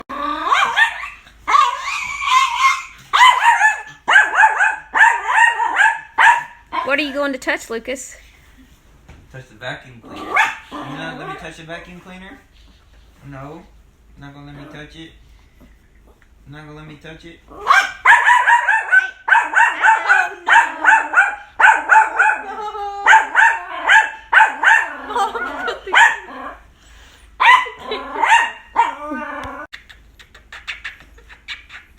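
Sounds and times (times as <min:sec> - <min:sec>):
small dog barking: 0:00.5 - 0:06.9, 0:10.2 - 0:11.4, 0:17.6 - 0:25.0, 0:25.6 - 0:26.5, 0:27.4 - 0:29.0.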